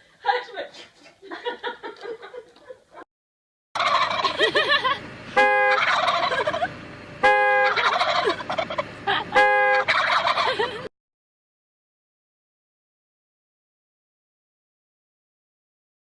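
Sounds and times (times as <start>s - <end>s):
turkeys gobbling: 3.8s - 4.9s, 5.6s - 6.7s, 7.5s - 10.9s
loud steady tone: 5.2s - 6.6s, 7.2s - 8.4s, 9.1s - 9.9s.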